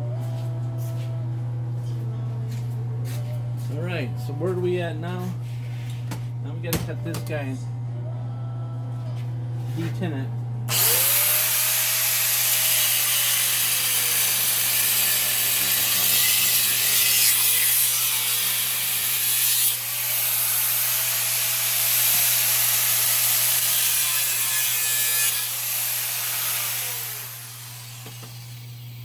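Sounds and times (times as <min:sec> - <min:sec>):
power tool cutting metal: 0:10.7 - 0:29.0
tool motor whine: 0:10.7 - 0:29.0.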